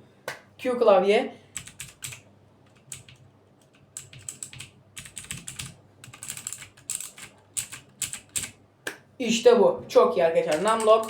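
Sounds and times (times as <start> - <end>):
clicky mechanical keyboard keystrokes: 1.6 - 8.6.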